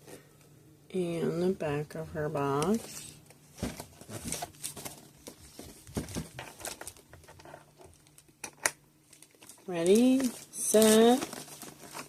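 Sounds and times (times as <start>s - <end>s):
packaging crinkling and rustling: 2.6s - 12.0s.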